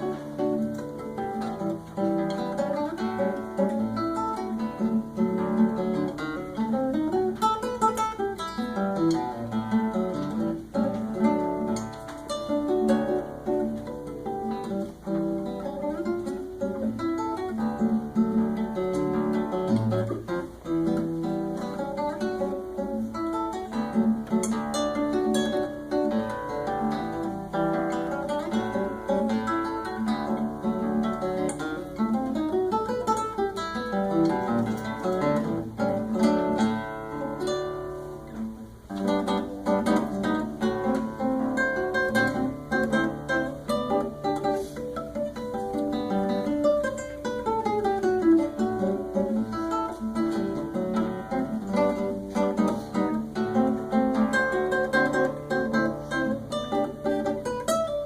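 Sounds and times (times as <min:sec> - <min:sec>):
classical guitar playing: 0:00.0 - 0:58.0.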